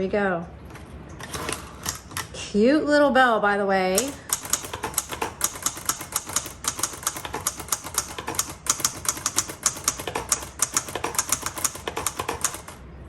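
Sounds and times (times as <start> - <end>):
typewriter key clicks: 4.0 - 12.8.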